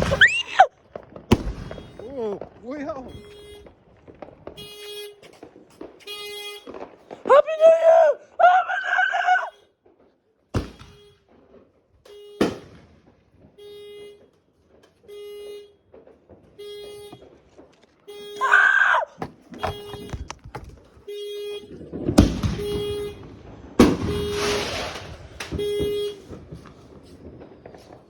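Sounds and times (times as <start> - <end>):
sharp bangs: 0.0 - 7.8, 12.1 - 13.9, 19.0 - 27.9
car horn tooting: 3.0 - 3.7, 4.5 - 5.3, 6.0 - 8.0, 9.0 - 9.8, 10.8 - 11.3, 12.0 - 12.5, 13.6 - 14.3, 15.0 - 15.9, 16.5 - 17.4, 18.0 - 21.8, 22.5 - 23.4, 24.0 - 26.4.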